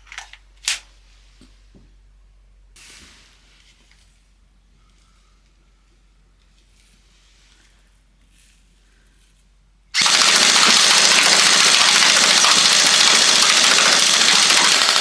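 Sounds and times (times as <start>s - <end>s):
airsoft pistol firing full-auto: 10.0s - 15.0s.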